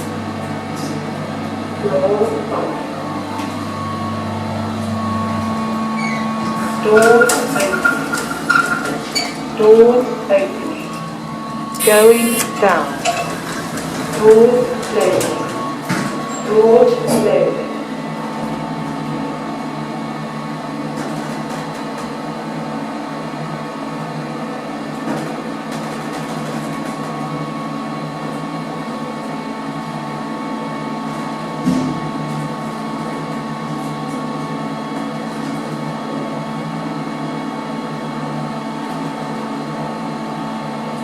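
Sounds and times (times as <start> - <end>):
lift drive humming: 0.0 - 9.0, 10.9 - 13.0.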